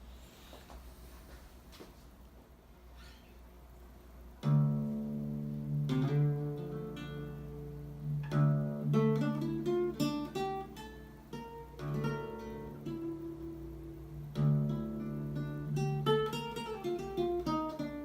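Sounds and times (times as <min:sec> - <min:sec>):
acoustic guitar playing: 0:04.4 - 0:18.0.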